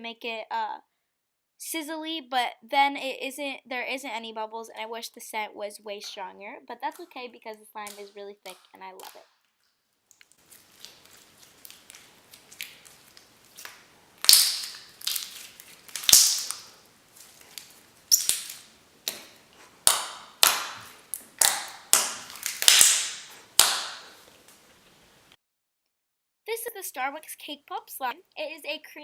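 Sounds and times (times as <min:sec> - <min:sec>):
slime crackling: 0:07.8 - 0:25.1.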